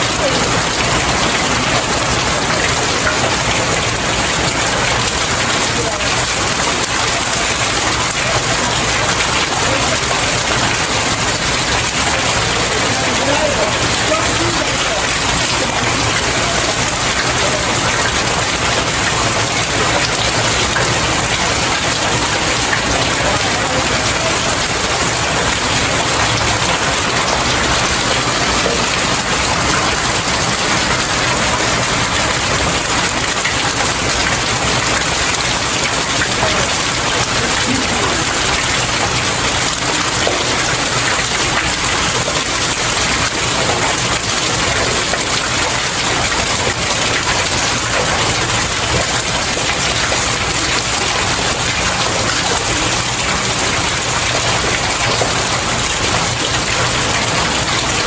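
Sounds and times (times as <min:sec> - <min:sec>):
rain falling on stairs: 0:00.0 - 0:58.0.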